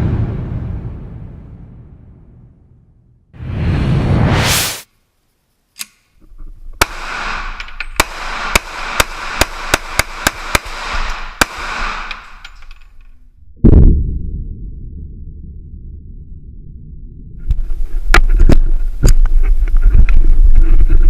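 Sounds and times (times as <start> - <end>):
rising whoosh effect: 3.4 - 4.9
pistol shots: 6.8 - 12.4.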